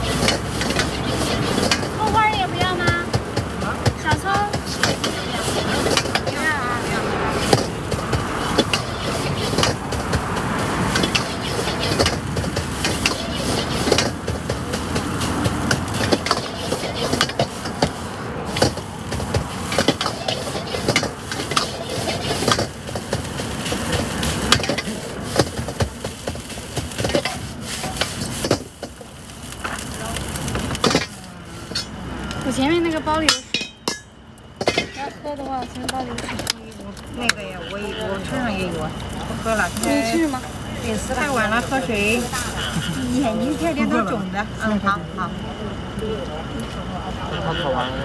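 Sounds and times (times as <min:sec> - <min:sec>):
cooking knocks and clatter: 0:00.0 - 0:44.6
street noise: 0:00.0 - 0:48.0.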